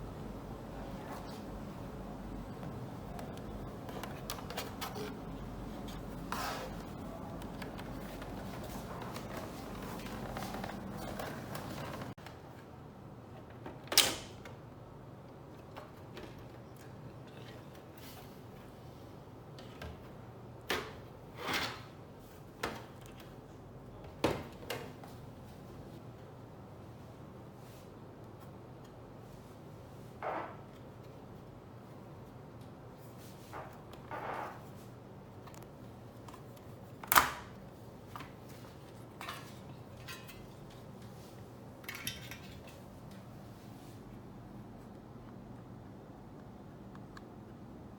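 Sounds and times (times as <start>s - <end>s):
faint steady hum: 0.0s - 13.3s.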